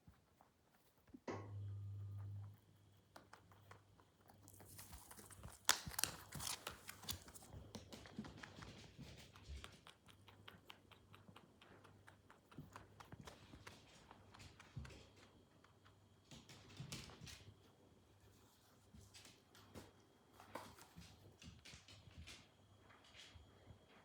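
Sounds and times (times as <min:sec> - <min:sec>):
rabbit drinking water clicks: 0:02.4 - 0:17.5.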